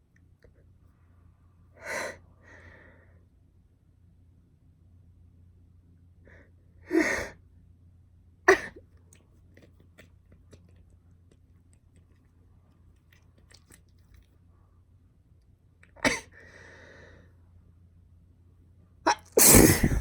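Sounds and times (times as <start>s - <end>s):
girl sneezing: 8.5s - 8.8s, 16.0s - 16.3s, 19.1s - 20.0s.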